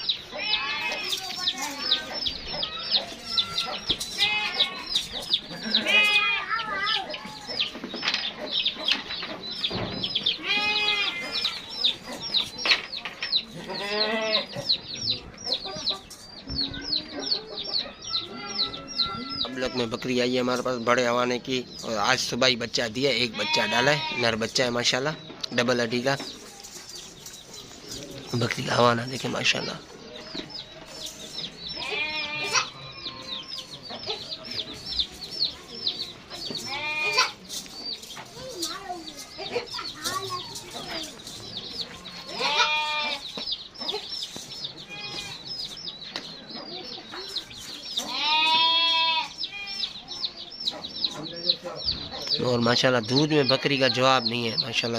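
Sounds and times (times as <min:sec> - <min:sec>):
birds chirping: 0:00.0 - 0:54.9
goat bleating: 0:00.3 - 0:01.4, 0:03.0 - 0:06.7, 0:10.3 - 0:11.6, 0:13.6 - 0:14.6, 0:23.3 - 0:24.3, 0:31.8 - 0:33.6, 0:36.5 - 0:37.4, 0:42.0 - 0:43.3, 0:44.8 - 0:45.4, 0:48.0 - 0:50.0.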